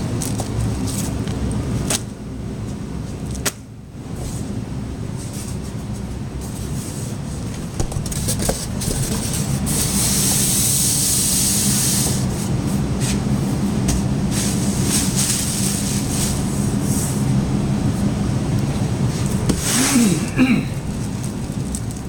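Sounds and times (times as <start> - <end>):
cardboard and plastic rustling: 0.0 - 2.1, 7.4 - 10.0, 13.9 - 16.9, 20.8 - 22.0
steady low hum: 0.0 - 22.0.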